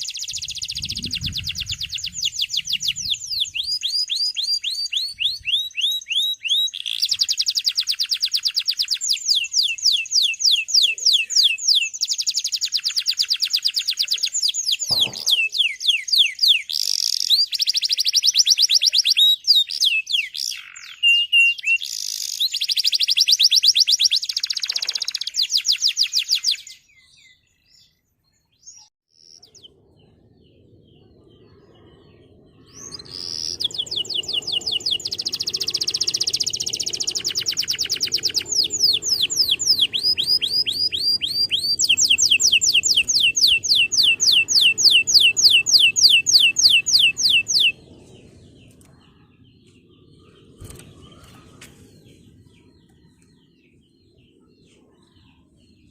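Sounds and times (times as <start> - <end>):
canary singing high trills: 32.7 - 48.0.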